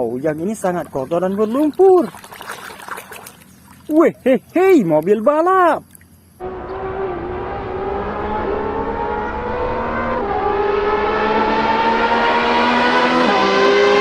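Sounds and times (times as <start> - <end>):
race car engine accelerating: 6.4 - 14.0.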